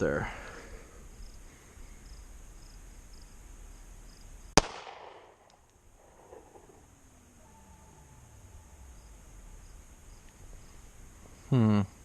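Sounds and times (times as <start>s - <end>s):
pistol shot with echo: 4.6s - 5.5s.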